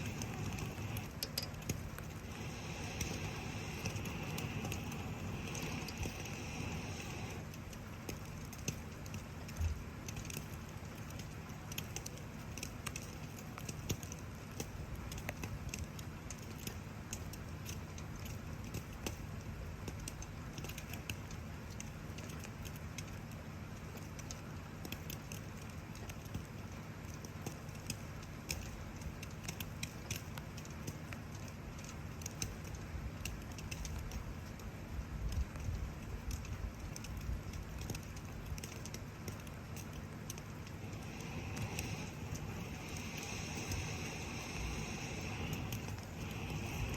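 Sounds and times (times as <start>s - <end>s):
campfire crackling and popping: 0.0s - 46.9s
falling rain hiss: 0.0s - 46.9s
low rumble: 40.6s - 46.9s.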